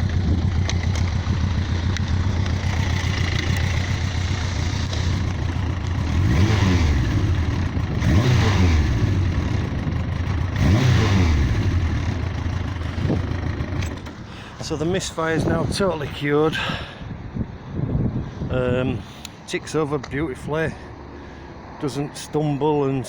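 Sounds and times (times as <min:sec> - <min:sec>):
motorcycle engine idling and revving: 0:00.0 - 0:16.3.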